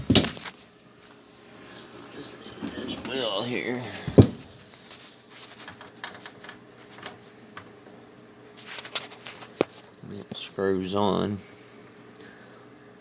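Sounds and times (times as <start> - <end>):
light clicks and rattles: 5.6 - 7.7.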